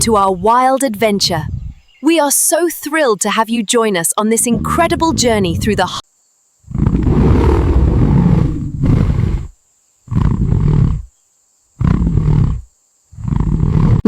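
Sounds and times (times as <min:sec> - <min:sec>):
lion roaring: 0:01.2 - 0:01.9, 0:04.5 - 0:06.0, 0:06.7 - 0:09.5, 0:10.1 - 0:11.1, 0:11.8 - 0:14.0.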